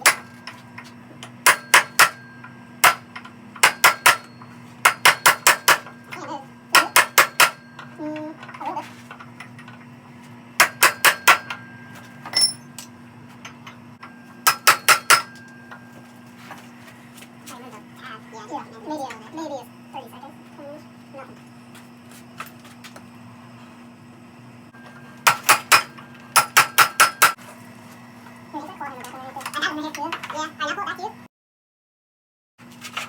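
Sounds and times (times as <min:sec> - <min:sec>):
hammer striking steel: 0:00.0 - 0:00.6, 0:01.4 - 0:06.1, 0:06.7 - 0:08.0, 0:10.6 - 0:12.9, 0:14.1 - 0:15.9, 0:24.8 - 0:27.4
steady low hum: 0:00.0 - 0:31.0.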